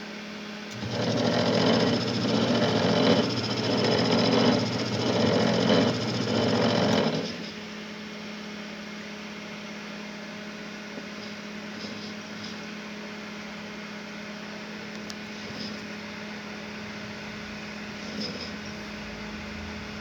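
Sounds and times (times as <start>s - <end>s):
coil-winding machine running roughly: 0.7s - 7.9s.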